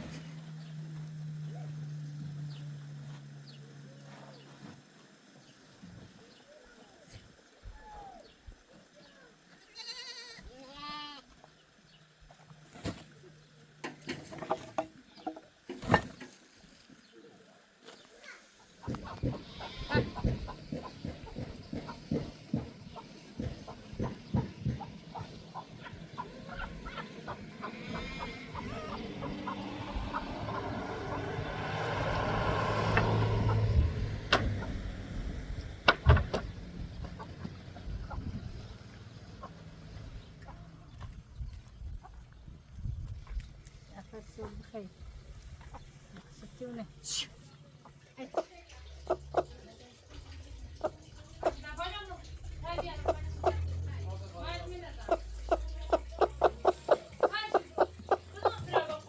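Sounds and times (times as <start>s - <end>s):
vehicle engine passing by: 0.0s - 5.5s, 18.8s - 41.6s, 45.0s - 59.0s
goat bleating: 9.5s - 11.4s, 19.4s - 20.2s.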